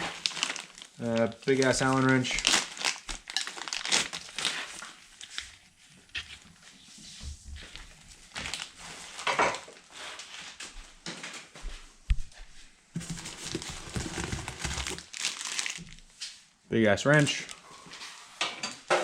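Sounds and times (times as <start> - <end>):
packaging rustling and crinkling: 0.0 - 6.1, 7.6 - 10.6, 13.0 - 16.4.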